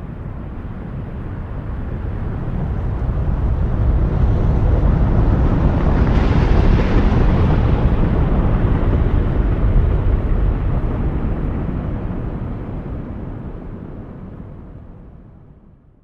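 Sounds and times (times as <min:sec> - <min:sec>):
deep rushing rumble: 0:01.9 - 0:12.8.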